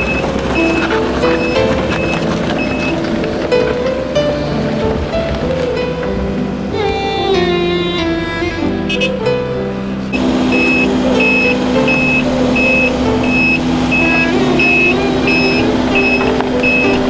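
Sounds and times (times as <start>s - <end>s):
reversing alarm beeping: 0.0s - 3.9s, 10.1s - 17.0s
diesel engine running: 0.0s - 17.0s.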